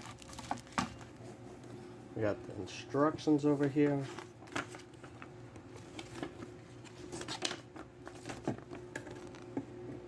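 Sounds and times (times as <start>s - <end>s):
paper packaging rustling: 0.0s - 1.4s, 3.3s - 9.6s
faint steady hum: 0.0s - 10.0s.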